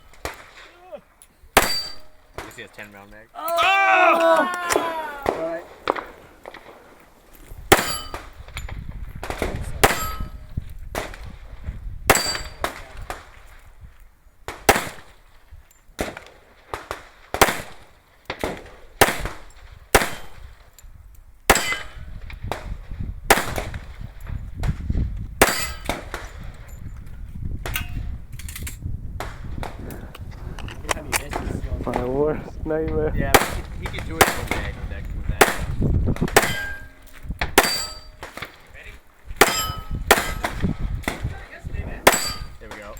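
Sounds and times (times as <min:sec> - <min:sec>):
metallic ringing of steel targets: 0:01.6 - 0:03.0, 0:07.8 - 0:08.4, 0:09.8 - 0:10.6, 0:12.1 - 0:12.7, 0:21.5 - 0:22.1, 0:25.4 - 0:26.0, 0:36.4 - 0:38.5, 0:39.4 - 0:40.6, 0:42.0 - 0:42.9
gunshots: 0:07.7 - 0:08.3, 0:09.2 - 0:10.3, 0:14.5 - 0:15.2, 0:16.0 - 0:20.4, 0:23.3 - 0:23.8, 0:33.3 - 0:38.6, 0:39.4 - 0:41.4, 0:42.0 - 0:42.9.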